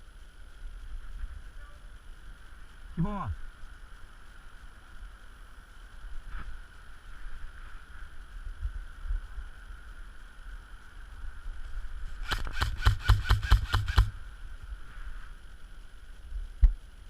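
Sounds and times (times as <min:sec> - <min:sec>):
wind rumble on microphone: 0:00.0 - 0:12.3
airsoft gun rapid firing: 0:12.2 - 0:14.2.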